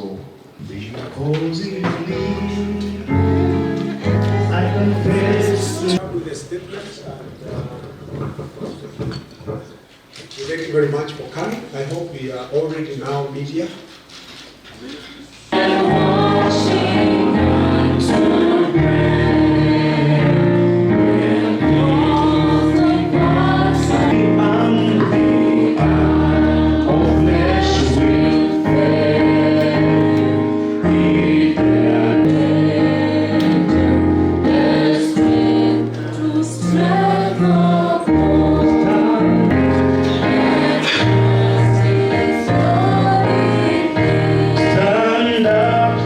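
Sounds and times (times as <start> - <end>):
gospel choir singing: 0.4 - 6.0, 15.4 - 46.0.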